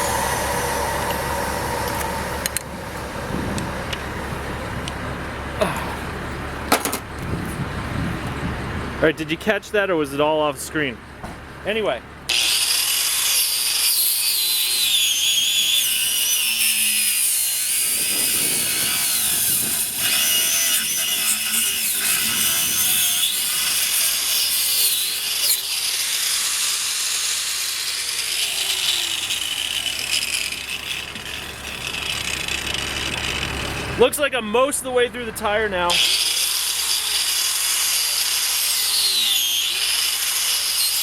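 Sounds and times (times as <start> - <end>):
angle grinder cutting rubber: 0.0 - 4.1, 12.3 - 34.0, 35.9 - 41.0.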